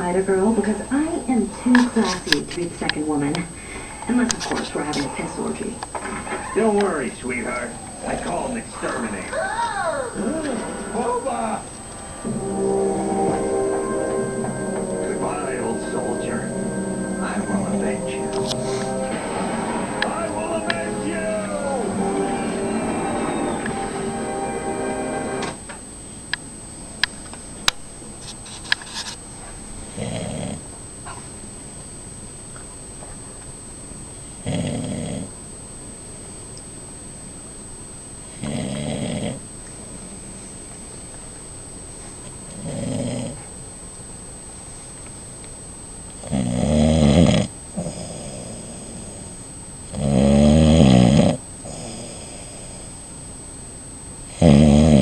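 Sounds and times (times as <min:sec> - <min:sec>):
soft breath: 0:03.5 - 0:04.1
man snoring: 0:50.0 - 0:52.8, 0:54.4 - 0:55.0.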